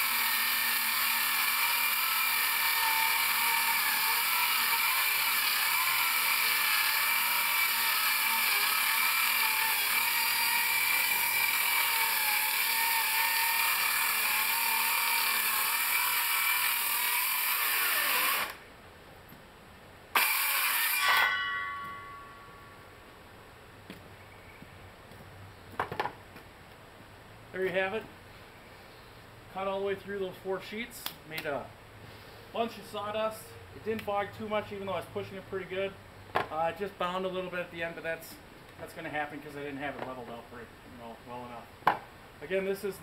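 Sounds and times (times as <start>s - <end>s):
circular saw cutting plywood: 0.0s - 18.6s, 20.2s - 22.0s.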